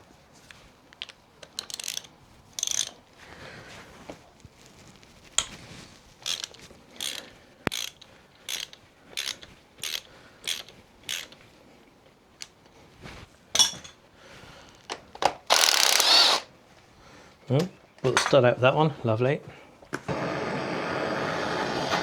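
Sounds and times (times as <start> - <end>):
ratchet wrench clicking: 1.4 - 3.0, 6.2 - 11.4, 15.5 - 16.5
ratchet rasp: 1.6 - 3.0, 6.2 - 11.4, 15.5 - 16.5.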